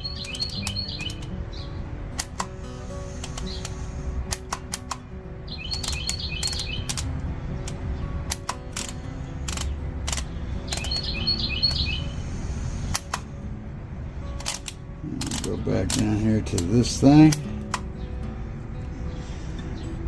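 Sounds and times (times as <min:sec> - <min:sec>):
sharp click: 0:00.0 - 0:01.4, 0:02.1 - 0:02.6, 0:03.2 - 0:05.0, 0:05.6 - 0:11.9, 0:12.9 - 0:13.3, 0:14.4 - 0:17.9
bird chirping: 0:00.0 - 0:01.9, 0:02.8 - 0:03.9, 0:05.4 - 0:12.9, 0:15.0 - 0:20.0.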